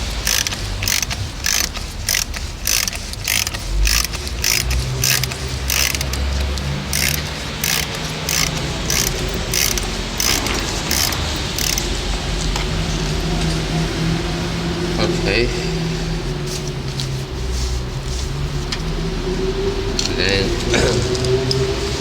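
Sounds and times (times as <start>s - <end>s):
ratchet wrench clicking: 0.0s - 12.0s.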